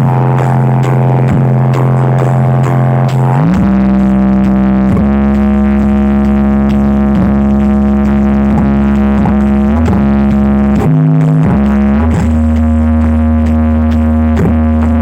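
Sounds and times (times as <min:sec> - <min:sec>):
droning electronic tone over loudspeakers: 0:00.0 - 0:15.0.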